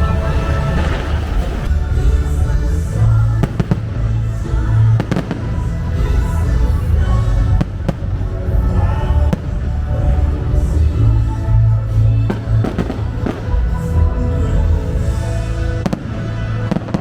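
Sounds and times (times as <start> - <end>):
fireworks bangs: 0.0 - 1.7, 5.0 - 5.7
music with heavy bass: 0.0 - 17.0.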